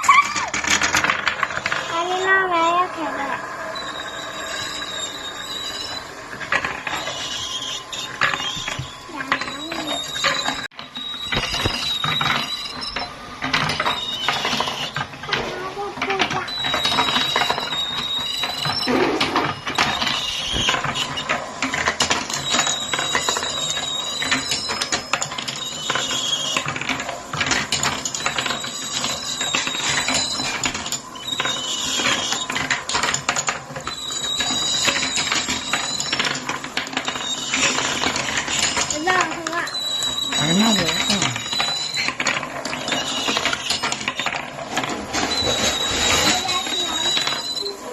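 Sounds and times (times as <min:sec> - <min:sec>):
marbles rattling down wooden run: 0:00.0 - 0:47.9
short high ringing tones: 0:01.8 - 0:06.3.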